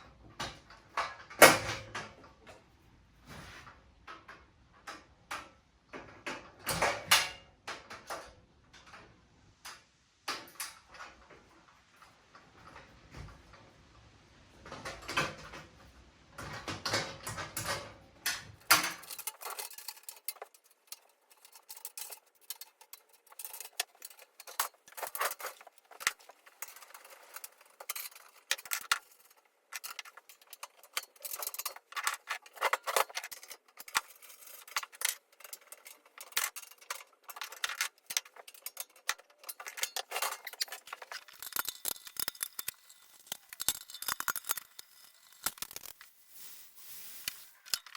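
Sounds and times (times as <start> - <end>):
small metal parts clinking: 18.6 - 47.9.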